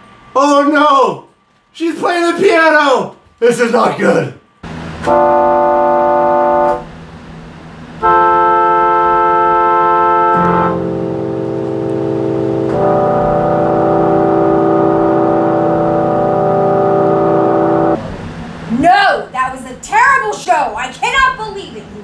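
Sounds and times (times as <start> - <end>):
keyboard playing organ chords: 4.6 - 18.7.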